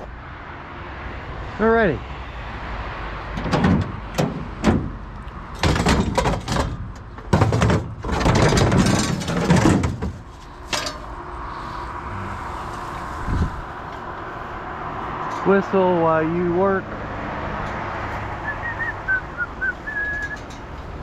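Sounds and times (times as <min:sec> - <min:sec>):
objects knocking and rattling: 0:03.3 - 0:11.1
clattering and scraping: 0:03.3 - 0:11.9.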